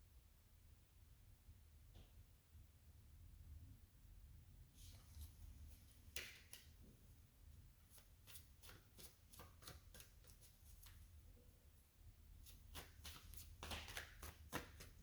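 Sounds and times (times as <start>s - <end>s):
cards being shuffled: 7.9s - 11.1s, 12.4s - 15.0s.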